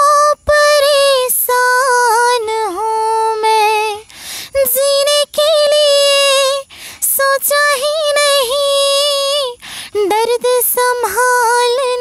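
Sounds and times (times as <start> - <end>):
woman singing with vibrato: 0.0 - 12.0
singer breathing: 4.0 - 4.6, 6.6 - 7.0, 9.6 - 10.0.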